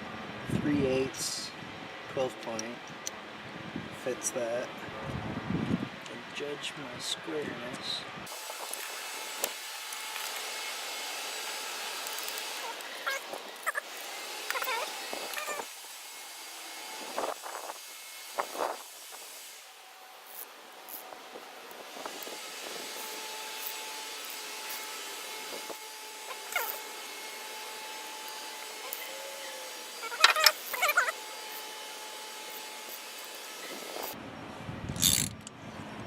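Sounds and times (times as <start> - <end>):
ratchet tap metal clicks: 35.0 - 35.6.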